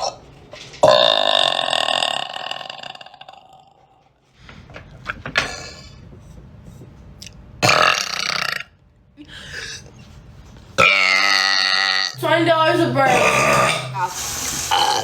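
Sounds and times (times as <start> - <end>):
human burps: 0.8 - 3.8, 7.6 - 8.8, 10.8 - 12.2, 13.2 - 14.1.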